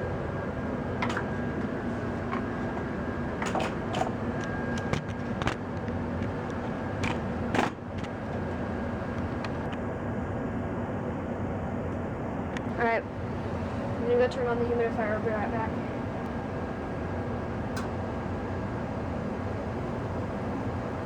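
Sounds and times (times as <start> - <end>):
furnace humming: 0.0 - 21.0
sharp clicks and knocks: 2.3 - 6.4.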